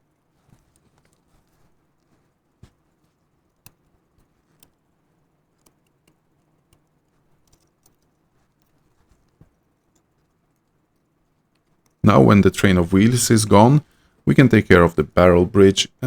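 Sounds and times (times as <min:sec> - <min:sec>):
small metallic clicks of tweezers: 0:03.4 - 0:04.8, 0:05.4 - 0:12.0.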